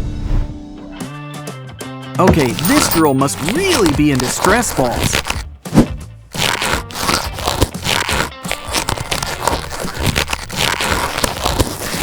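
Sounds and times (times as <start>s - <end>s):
background music: 0.0s - 11.8s
crackling and scraping handling noises: 2.2s - 5.5s, 6.3s - 12.0s.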